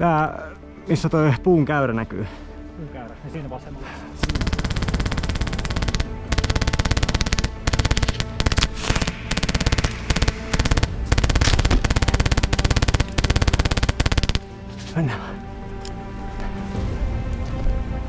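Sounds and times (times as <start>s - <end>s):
airsoft gun firing full auto: 4.2s - 14.5s.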